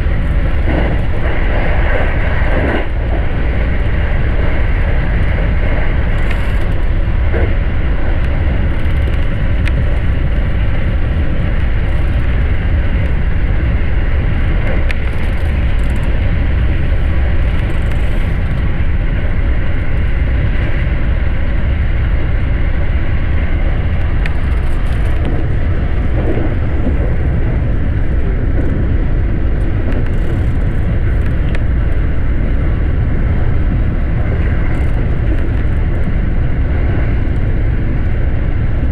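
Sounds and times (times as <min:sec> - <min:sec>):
electric train rumbling: 0:00.0 - 0:38.9.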